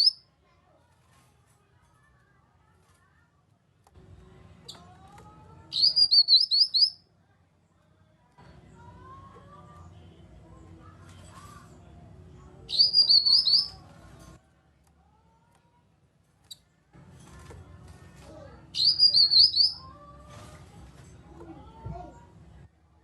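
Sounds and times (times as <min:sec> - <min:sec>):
bird high chattering call: 0:05.8 - 0:07.0, 0:12.7 - 0:13.8, 0:18.8 - 0:19.8.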